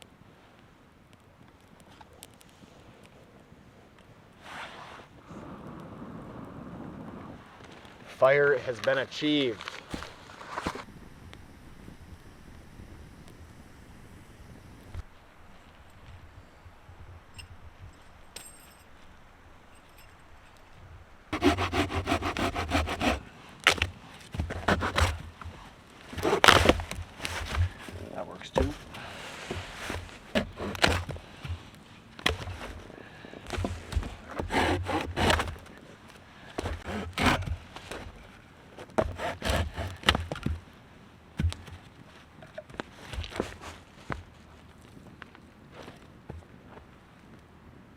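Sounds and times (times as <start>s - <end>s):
wood cracking: 8.8s - 10.9s, 17.5s - 40.7s
rasping on dry firewood: 21.3s - 40.5s.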